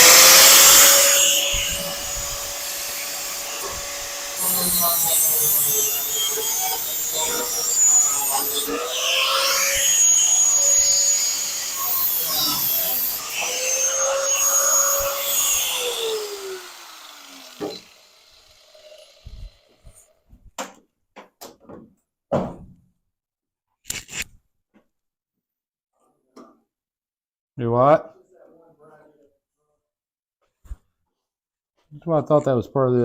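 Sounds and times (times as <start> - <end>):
high-speed power tool on metal: 0.0 - 19.8.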